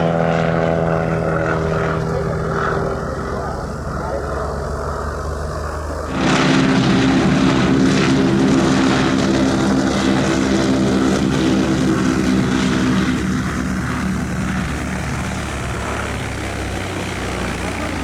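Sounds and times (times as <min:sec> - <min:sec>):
propeller engines droning: 0:00.0 - 0:18.0.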